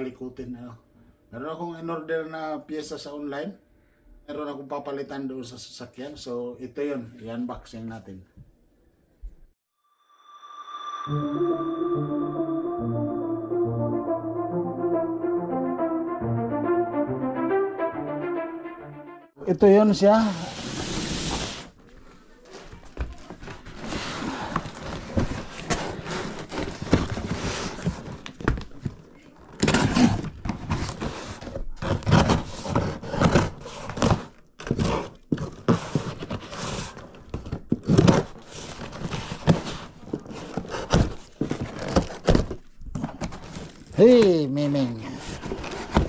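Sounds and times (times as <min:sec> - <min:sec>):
packaging rustling: 0:20.6 - 0:44.0.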